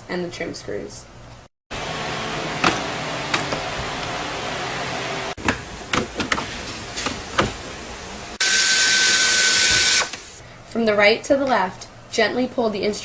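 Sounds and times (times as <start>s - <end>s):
power tool whirring: 1.8s - 10.4s.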